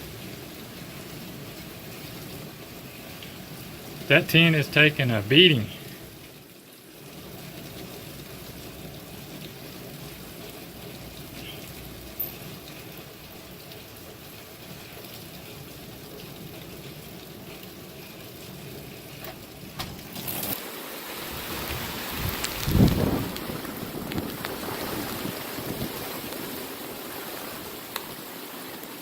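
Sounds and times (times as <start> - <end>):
storm rain: 0.0 - 29.0
gusting wind: 21.0 - 28.2.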